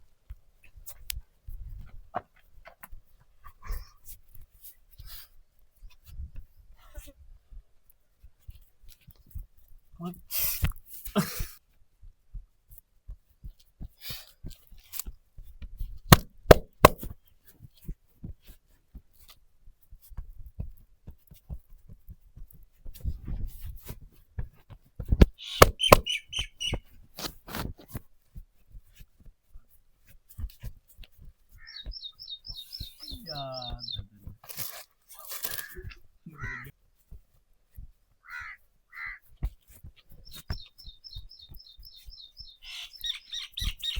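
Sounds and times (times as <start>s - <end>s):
hand massage slaps and taps: 16.1s - 17.2s, 25.0s - 26.1s.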